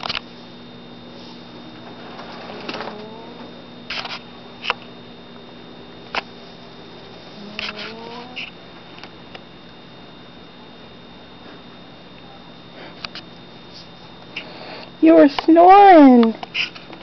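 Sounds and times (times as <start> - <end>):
cat snoring: 2.6 - 3.7, 7.2 - 8.5.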